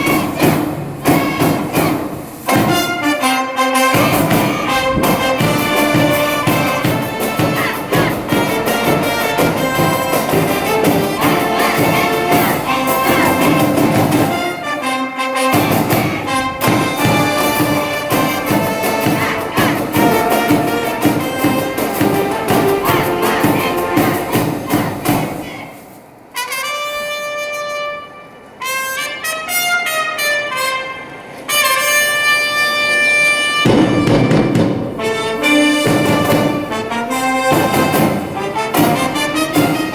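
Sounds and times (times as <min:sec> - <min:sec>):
brass band playing: 0:00.0 - 0:39.9
trumpets and trombones: 0:00.0 - 0:39.9.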